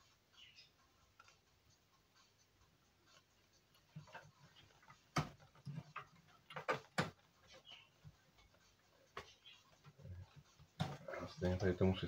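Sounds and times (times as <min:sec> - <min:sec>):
computer parts clicking and knocking: 0:04.0 - 0:07.6.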